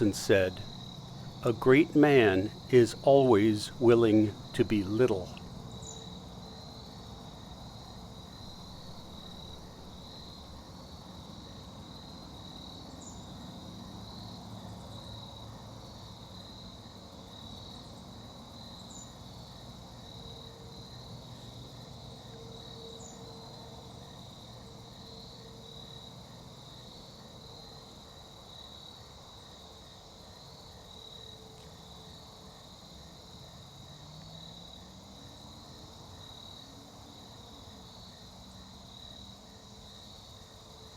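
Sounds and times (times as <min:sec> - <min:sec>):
low background hum: 0:00.0 - 0:06.7
insect trilling chorus: 0:00.0 - 0:07.6.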